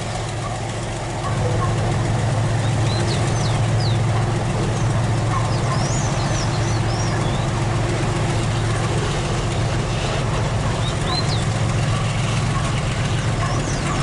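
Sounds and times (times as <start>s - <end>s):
diesel locomotive engine idling: 0.0s - 14.0s
birds chirping: 1.2s - 14.0s.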